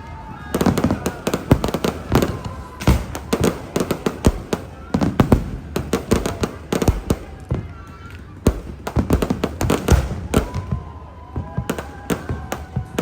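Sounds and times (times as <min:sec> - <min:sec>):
fireworks exploding: 0:00.0 - 0:13.0.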